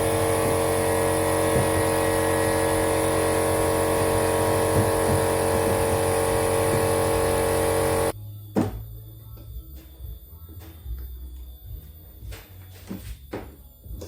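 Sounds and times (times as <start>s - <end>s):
machine motor running: 0.0s - 8.2s.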